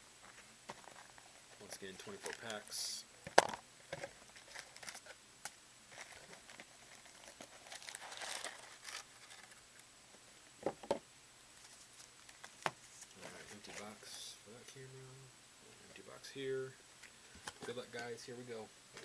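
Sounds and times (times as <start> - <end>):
wrapping crinkling: 0.8 - 2.7, 4.0 - 5.2, 5.9 - 9.6.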